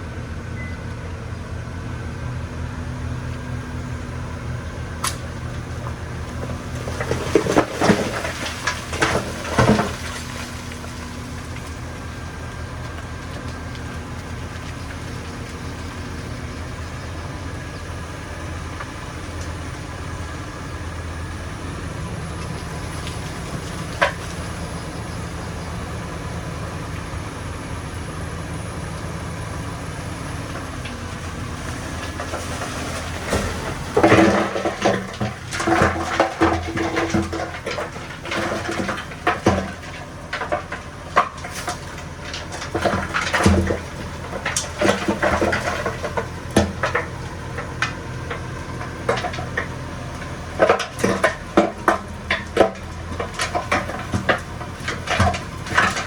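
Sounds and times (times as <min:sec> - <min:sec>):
diesel engine running: 0:00.0 - 0:56.0
metallic clanks and knocks: 0:32.0 - 0:56.0.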